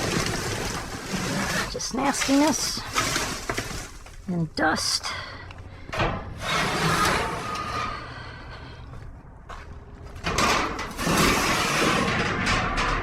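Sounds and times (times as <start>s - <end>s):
junk scraping in a dumpster: 0.0s - 4.2s, 6.0s - 8.4s, 10.1s - 13.0s.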